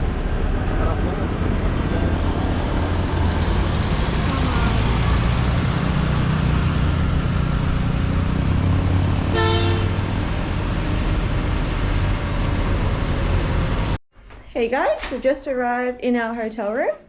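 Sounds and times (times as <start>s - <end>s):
vehicle road rumble: 0.0s - 14.0s
short car horn toot: 9.3s - 10.0s.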